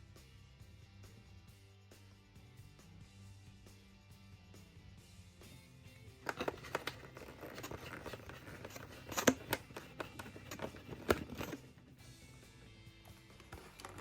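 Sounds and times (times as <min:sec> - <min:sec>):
packaging crinkling and rustling: 0:06.2 - 0:11.7.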